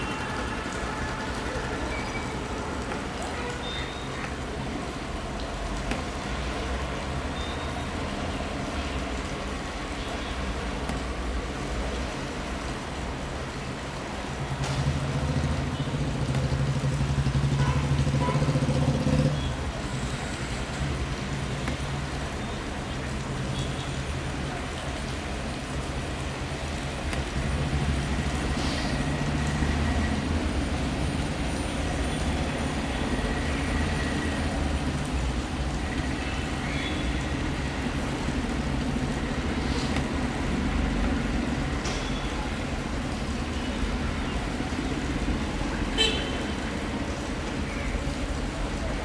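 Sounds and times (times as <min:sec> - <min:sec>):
traffic engines rumbling: 0:00.0 - 0:49.0.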